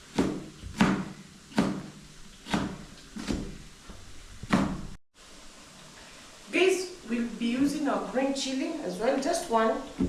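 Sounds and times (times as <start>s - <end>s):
knife chopping on cutting board: 0.0s - 3.6s, 4.5s - 5.0s.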